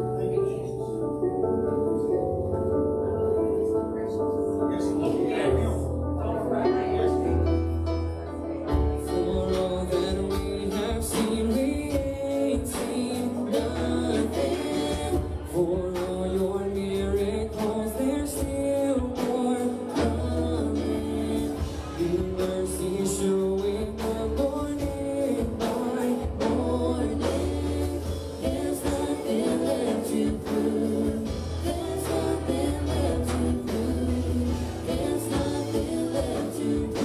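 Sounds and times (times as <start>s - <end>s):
bass line: 0.0s - 37.0s
gospel singers: 0.0s - 37.0s
drums: 7.6s - 37.0s.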